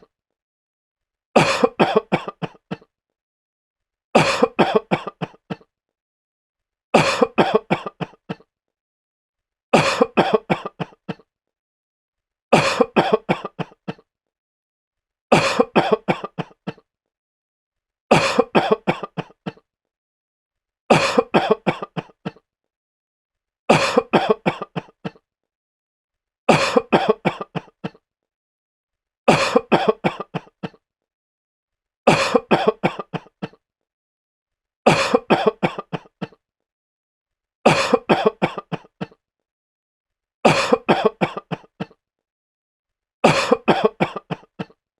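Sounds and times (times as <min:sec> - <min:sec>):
man coughing harshly: 0:01.4 - 0:02.8, 0:04.2 - 0:05.6, 0:07.0 - 0:08.4, 0:09.8 - 0:11.2, 0:12.6 - 0:14.0, 0:15.3 - 0:16.8, 0:18.1 - 0:19.6, 0:20.9 - 0:22.4, 0:23.7 - 0:25.2, 0:26.5 - 0:28.0, 0:29.3 - 0:30.8, 0:32.1 - 0:33.6, 0:34.9 - 0:36.4, 0:37.7 - 0:39.2, 0:40.5 - 0:42.0, 0:43.2 - 0:44.8.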